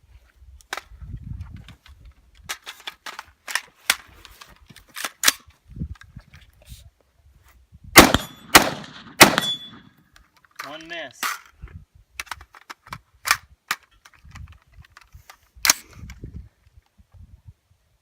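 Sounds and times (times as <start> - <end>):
loud rifle shot with echo: 8.0 - 9.8.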